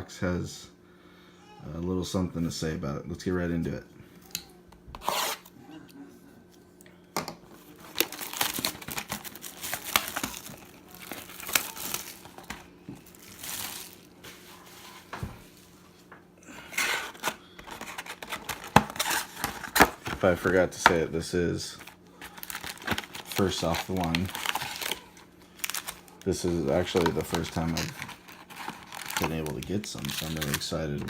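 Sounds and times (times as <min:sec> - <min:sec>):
plastic wrapping tearing and crinkling: 0:07.5 - 0:15.3, 0:16.6 - 0:20.7, 0:21.7 - 0:31.0.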